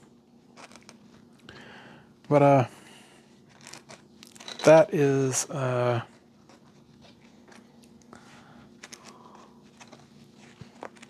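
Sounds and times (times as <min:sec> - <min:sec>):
low steady hum: 0:00.0 - 0:11.0.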